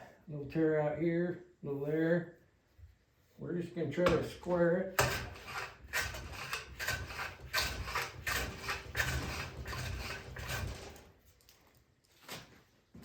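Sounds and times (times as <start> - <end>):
hand plane rasping on wood: 5.0 - 11.0.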